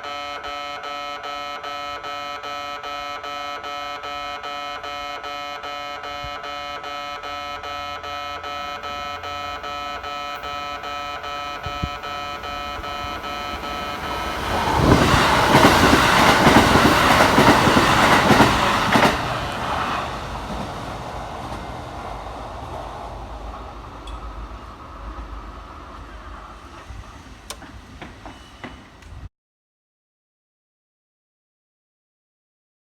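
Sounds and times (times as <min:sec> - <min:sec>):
level crossing warning bell: 0:00.0 - 0:19.5, 0:22.2 - 0:25.6
train passing: 0:06.1 - 0:29.3.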